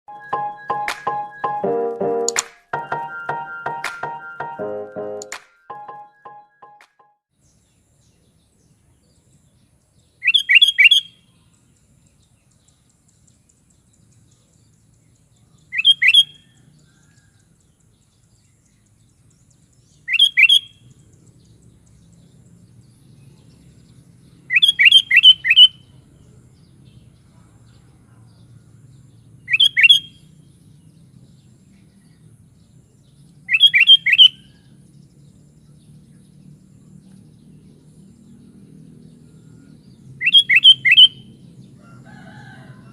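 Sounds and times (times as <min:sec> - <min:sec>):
bird whistled calls: 0:10.2 - 0:11.2, 0:15.8 - 0:16.5, 0:20.1 - 0:20.8, 0:24.5 - 0:25.8, 0:29.5 - 0:30.2, 0:33.5 - 0:34.6, 0:40.2 - 0:41.3.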